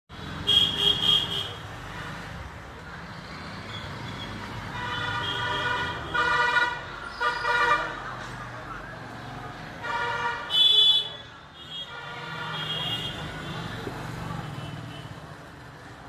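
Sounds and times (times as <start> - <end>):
road traffic: 0.1 - 16.0
vehicle horns honking: 0.4 - 1.6, 4.7 - 8.0, 9.8 - 13.3.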